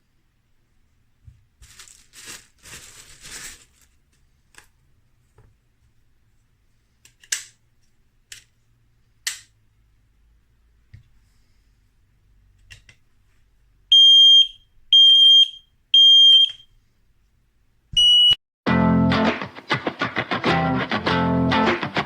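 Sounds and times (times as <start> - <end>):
packaging rustling and tearing: 1.6 - 4.0.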